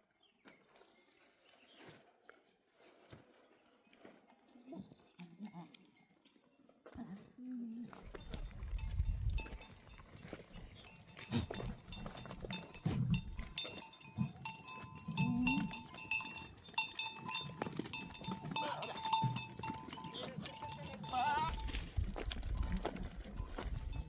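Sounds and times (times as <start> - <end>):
animal bells ringing: 0.8 - 1.7, 7.9 - 24.0.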